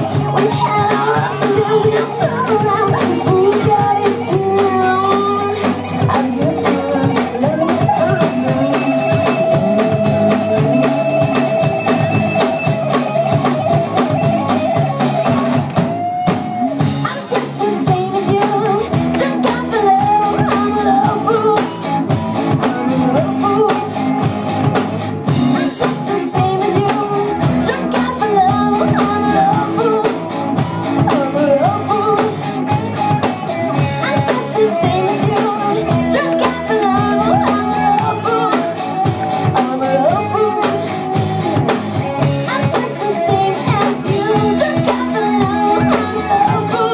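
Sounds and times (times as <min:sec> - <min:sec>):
person singing: 0:00.0 - 0:24.3, 0:25.3 - 0:46.9
drums and cymbals: 0:00.0 - 0:46.9
electric guitar: 0:00.0 - 0:46.9.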